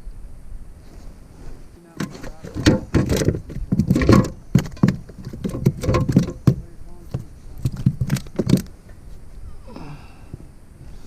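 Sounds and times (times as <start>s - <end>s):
fishing tackle knocking and rattling: 2.0s - 8.7s.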